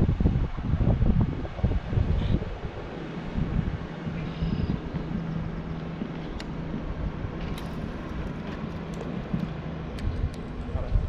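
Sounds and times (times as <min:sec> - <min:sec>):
low engine hum: 0:00.0 - 0:11.0
wind rumbling on microphone: 0:00.0 - 0:11.0.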